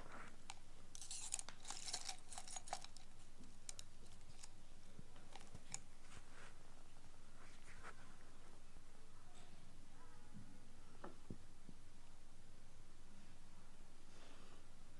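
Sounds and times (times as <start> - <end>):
ear-cleaning tool scraping: 1.0 - 4.5.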